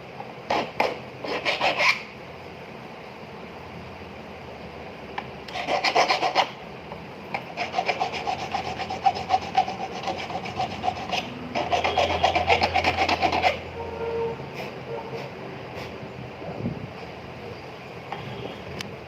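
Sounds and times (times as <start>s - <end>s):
hand tool rasping on metal ring: 0.5s - 2.0s, 5.5s - 6.5s, 7.4s - 13.6s.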